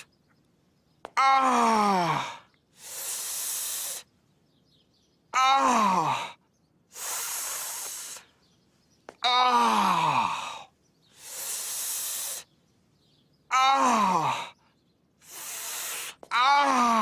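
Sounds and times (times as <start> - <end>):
man groaning in pain: 1.2 - 2.4, 5.4 - 6.4, 9.2 - 10.6, 13.5 - 14.5, 16.3 - 17.0
breath hissing through teeth: 2.8 - 4.1, 6.9 - 8.3, 11.1 - 12.5, 15.2 - 16.2.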